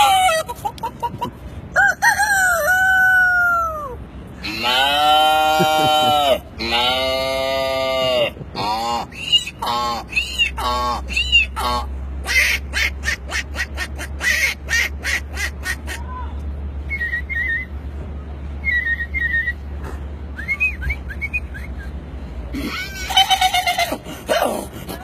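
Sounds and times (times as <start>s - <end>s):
man imitating animal calls: 2.6s - 16.1s.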